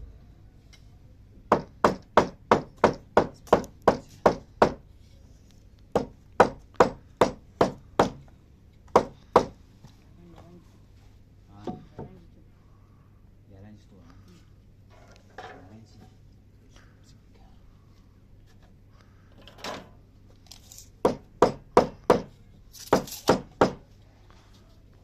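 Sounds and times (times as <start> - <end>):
sharp strikes on wood: 1.5 - 4.8, 5.9 - 8.2, 8.9 - 9.6, 21.0 - 23.8.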